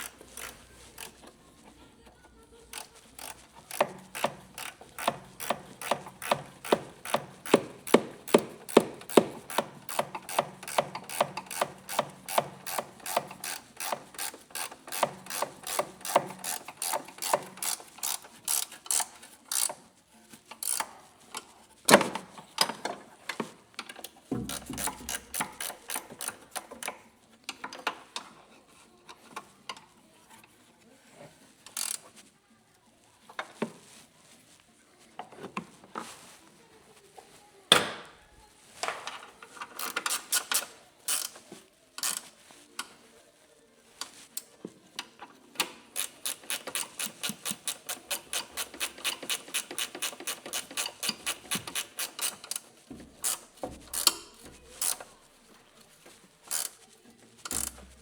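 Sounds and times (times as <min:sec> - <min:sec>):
ratchet wrench clicking: 0:00.0 - 0:01.2, 0:02.7 - 0:19.8, 0:20.6 - 0:20.9, 0:24.5 - 0:26.7, 0:31.8 - 0:32.0, 0:39.8 - 0:41.4, 0:42.0 - 0:42.2, 0:46.0 - 0:52.6, 0:53.2 - 0:55.0, 0:56.5 - 0:56.8, 0:57.5 - 0:57.9.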